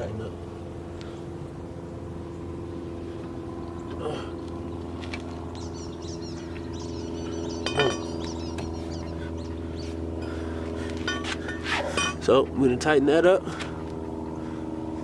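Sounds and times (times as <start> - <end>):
birds chirping: 0.0 - 15.0
steady low hum: 0.0 - 15.0
lug wrench clinking on nuts: 11.0 - 12.3.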